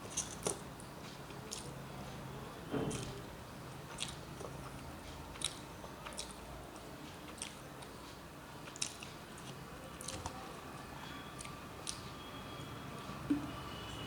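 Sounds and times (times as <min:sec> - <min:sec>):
person chewing food: 0:00.0 - 0:01.8, 0:02.9 - 0:03.2, 0:03.8 - 0:10.4, 0:11.3 - 0:12.1.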